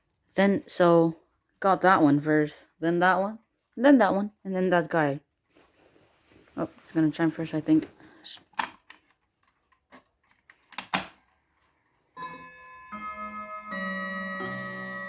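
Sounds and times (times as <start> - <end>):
mantel clock chiming: 12.2 - 15.0
mantel clocks ticking: 12.2 - 15.0.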